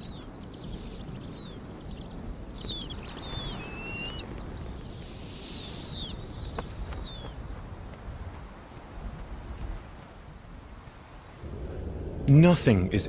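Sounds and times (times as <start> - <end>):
bird whistles sliding downward: 0.6 - 7.2
low rumble: 11.4 - 13.0.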